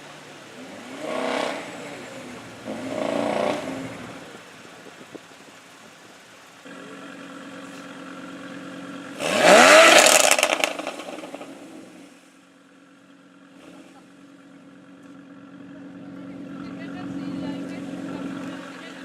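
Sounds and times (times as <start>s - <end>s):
sports car engine revving: 0.0s - 5.1s, 6.6s - 19.0s
exhaust crackles and pops: 6.6s - 12.0s.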